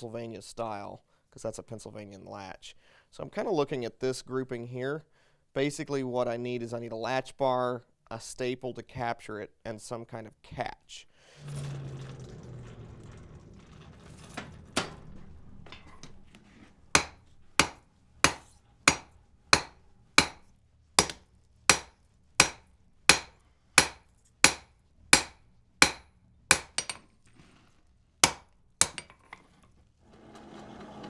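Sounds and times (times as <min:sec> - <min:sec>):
hammer striking iron on anvil: 0:17.0 - 0:27.1, 0:28.2 - 0:29.4.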